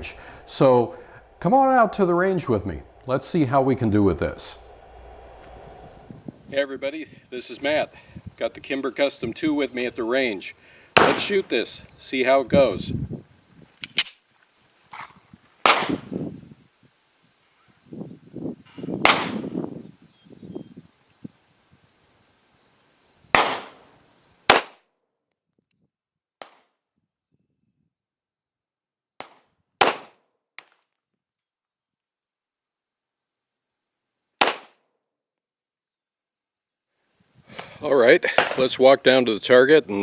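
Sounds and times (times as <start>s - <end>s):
crickets chirping: 0.0s - 40.0s
pistol shots: 11.0s - 11.3s, 23.4s - 23.8s, 24.5s - 24.8s, 29.8s - 30.2s, 34.4s - 34.8s.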